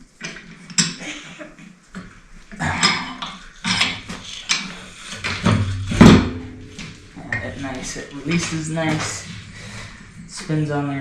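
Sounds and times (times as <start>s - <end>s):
metal clanks of vise: 2.6s - 7.4s.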